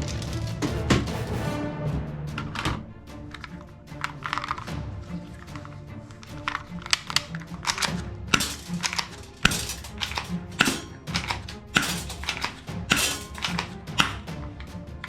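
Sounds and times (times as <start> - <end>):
background music: 0.0 - 15.0
sharp clicks and knocks: 6.2 - 14.7.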